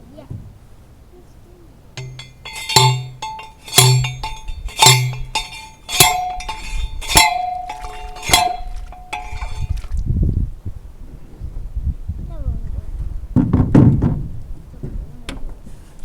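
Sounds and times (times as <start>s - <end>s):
metal post driver clanging: 2.0s - 9.8s.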